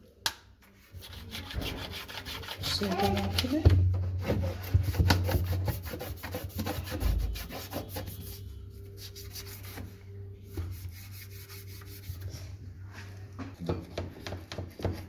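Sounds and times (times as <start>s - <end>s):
toothbrush scrubbing: 0.9s - 3.6s.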